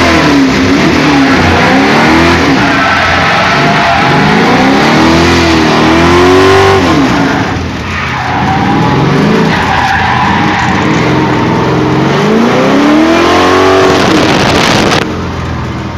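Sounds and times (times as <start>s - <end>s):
car engine revving: 0.0s - 15.4s
wind and tyre noise: 0.0s - 15.9s.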